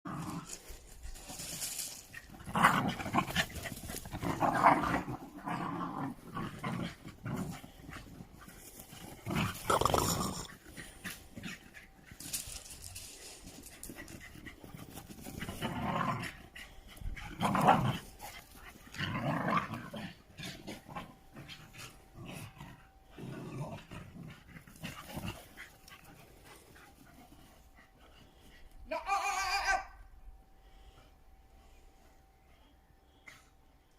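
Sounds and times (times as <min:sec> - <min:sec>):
dogs growling: 0:00.1 - 0:28.5
dogs panting: 0:00.6 - 0:04.4, 0:06.2 - 0:19.0, 0:20.2 - 0:28.9.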